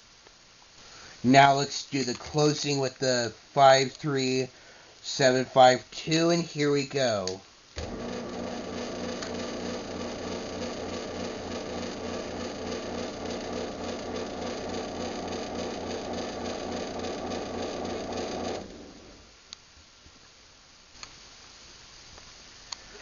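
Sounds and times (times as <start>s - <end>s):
garage door opener motor humming: 7.8s - 19.4s
faint click: 21.0s - 21.2s.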